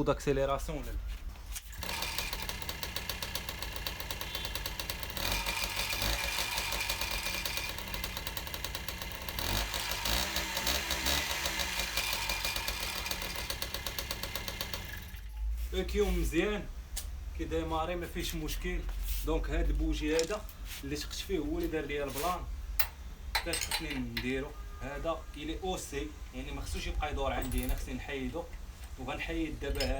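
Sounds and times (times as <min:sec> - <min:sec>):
moped engine starting and revving: 0:01.8 - 0:15.3.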